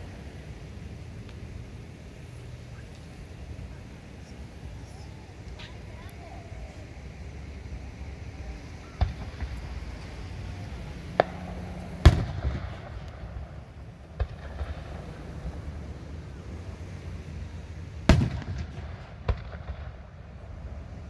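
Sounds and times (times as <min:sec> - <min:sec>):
fireworks bangs: 0:08.3 - 0:16.1, 0:18.0 - 0:20.8.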